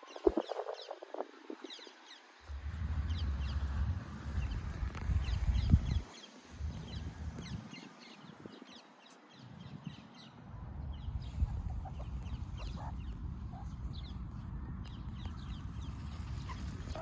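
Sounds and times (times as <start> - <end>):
low rumble: 2.5 - 6.0, 6.6 - 7.7
meerkat chirping: 11.4 - 13.8.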